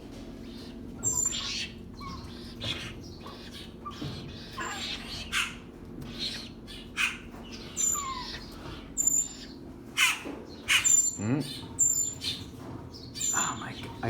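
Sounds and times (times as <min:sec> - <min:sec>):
harsh bird calls: 0:00.4 - 0:14.0.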